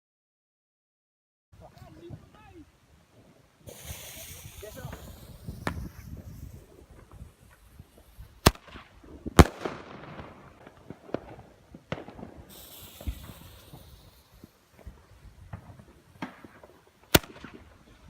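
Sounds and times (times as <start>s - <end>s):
fireworks bangs: 3.6s - 18.0s.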